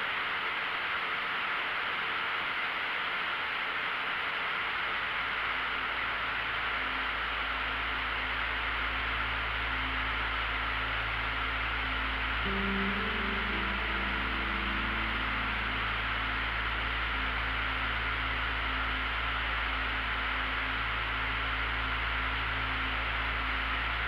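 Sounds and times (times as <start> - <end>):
light aircraft engine drone: 0.0 - 24.0
faint music: 4.3 - 24.0.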